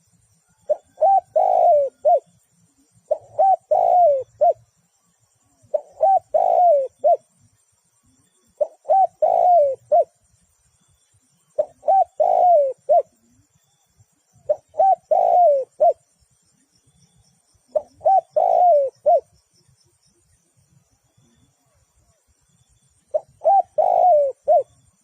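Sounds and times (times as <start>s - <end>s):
dove cooing: 0.0s - 7.4s, 8.0s - 10.2s, 11.4s - 13.4s, 14.4s - 16.1s, 17.6s - 19.4s, 23.0s - 25.0s.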